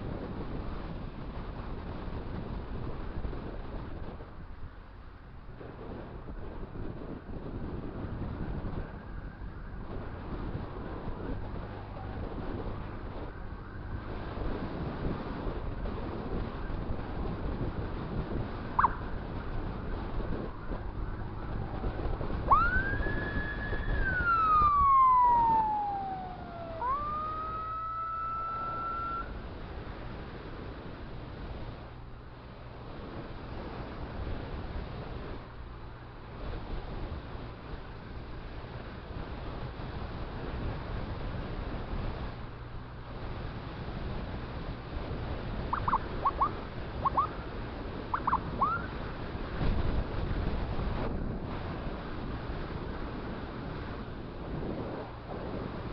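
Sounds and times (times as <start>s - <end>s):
road and wind noise: 0.0s - 55.9s
electronic vehicle siren: 18.7s - 29.4s, 45.7s - 47.4s, 48.1s - 49.0s
short sharp chirps: 18.8s - 19.0s, 45.8s - 47.3s.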